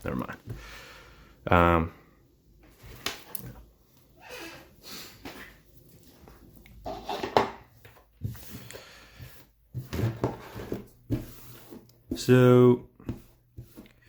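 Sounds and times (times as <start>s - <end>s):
objects knocking and rustling: 6.1s - 12.4s.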